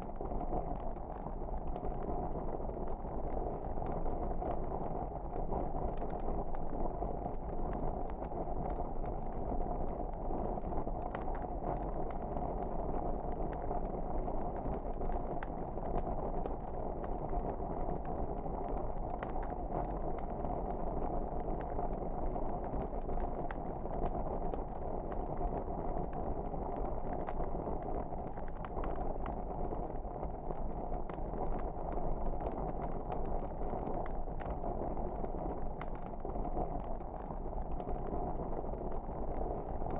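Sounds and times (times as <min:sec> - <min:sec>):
fire crackling and popping: 0:00.0 - 0:39.9.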